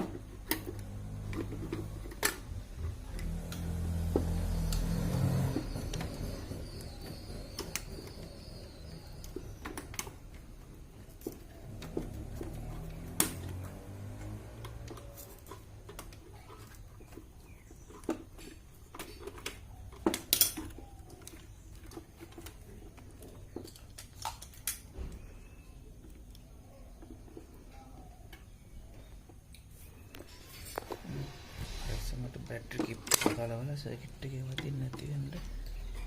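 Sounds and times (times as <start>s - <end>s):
plastic and metal clicks and knocks: 14.5s - 25.2s.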